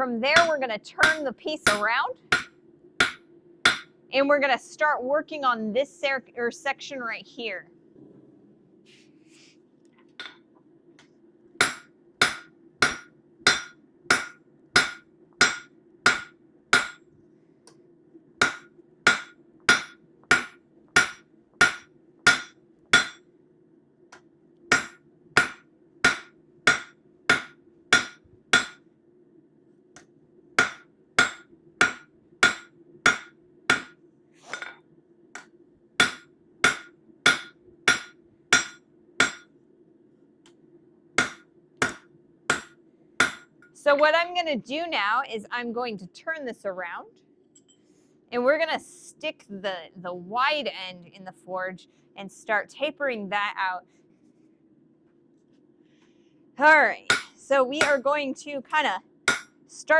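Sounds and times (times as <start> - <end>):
hammer striking metal on anvil: 0.4 - 3.9, 10.2 - 10.4, 11.6 - 17.0, 18.4 - 23.2, 24.7 - 28.8, 30.6 - 34.8, 35.4 - 39.5, 41.2 - 43.5, 57.1 - 58.0, 59.3 - 59.5.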